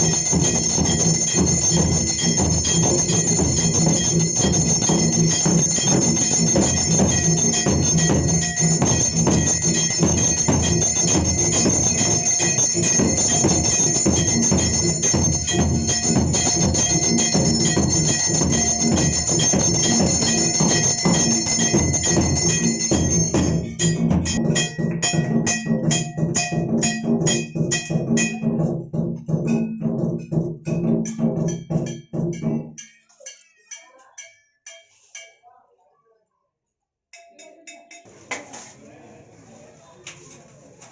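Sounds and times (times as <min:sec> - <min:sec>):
temple bells clanging: 0:00.0 - 0:28.6
drums beating: 0:00.0 - 0:33.4.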